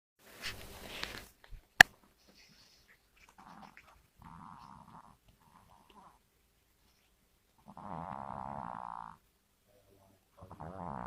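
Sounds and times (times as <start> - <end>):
rustle: 0.2 - 7.6
animal snoring: 3.4 - 6.2, 7.6 - 9.2, 10.4 - 11.0.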